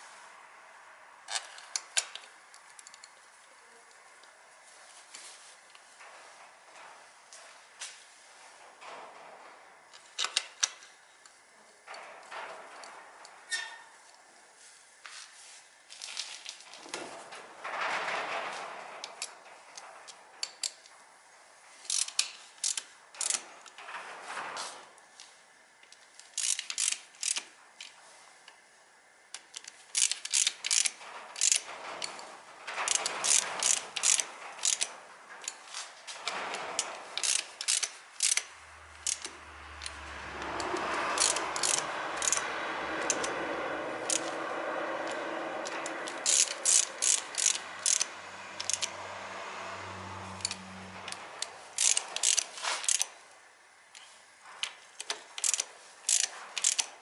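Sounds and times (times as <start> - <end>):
ratchet wrench clicking: 1.3 - 3.1, 21.8 - 23.8, 25.9 - 28.0, 29.3 - 32.2, 32.9 - 35.6, 36.8 - 44.4, 45.1 - 49.0, 50.3 - 53.1, 53.9 - 57.0.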